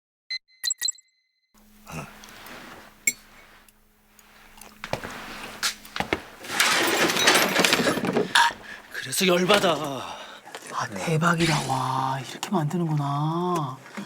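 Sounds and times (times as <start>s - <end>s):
light clinking: 1.6s - 10.0s
clatter: 4.8s - 8.8s.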